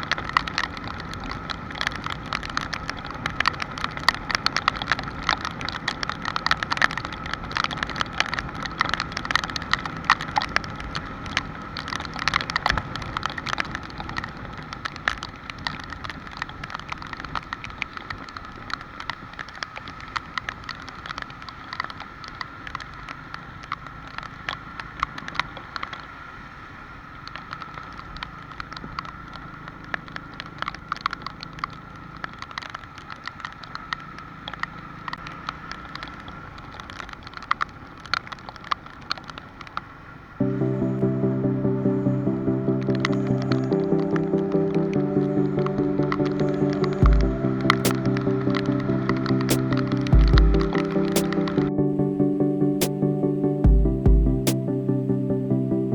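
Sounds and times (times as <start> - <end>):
rain pattering on a surface: 0.0 - 55.9.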